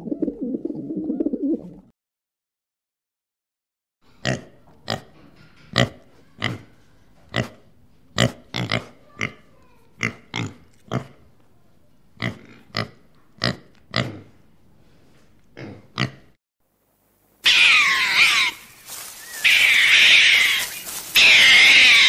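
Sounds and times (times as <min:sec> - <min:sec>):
pig grunting: 0:08.2 - 0:11.2, 0:12.2 - 0:14.4, 0:15.6 - 0:16.4.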